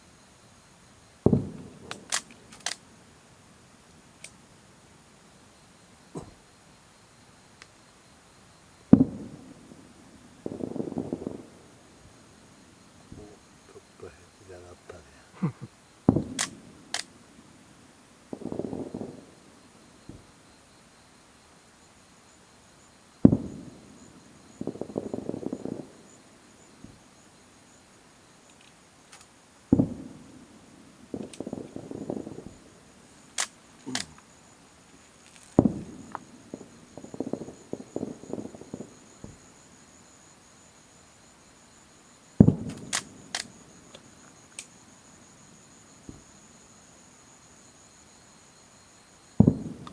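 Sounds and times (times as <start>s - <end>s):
crickets chirring: 0.0s - 49.9s
firework shells bursting: 42.4s - 44.1s, 49.4s - 49.9s.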